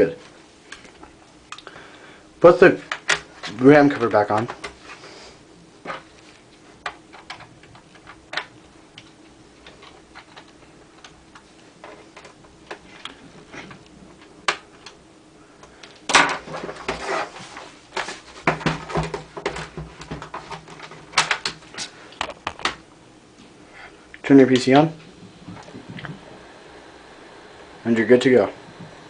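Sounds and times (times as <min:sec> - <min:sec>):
plastic clattering: 0:17.9 - 0:22.8.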